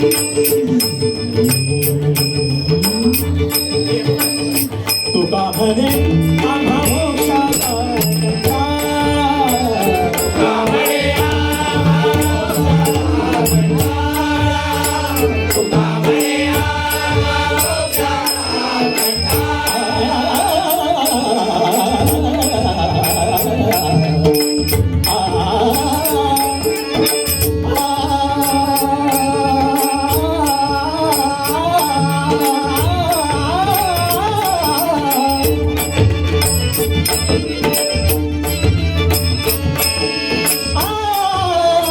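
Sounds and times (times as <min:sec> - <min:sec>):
hand drum beat: 0:00.0 - 0:41.0
ornamented vocal melody: 0:05.1 - 0:36.0.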